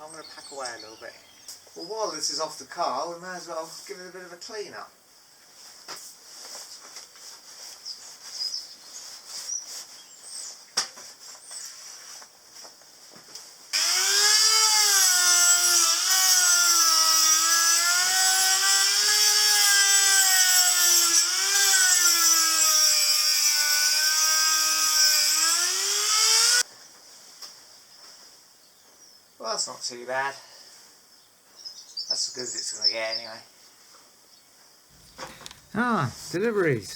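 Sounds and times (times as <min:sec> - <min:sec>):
electric power tool whining: 0:13.8 - 0:26.6, 0:34.9 - 0:36.4.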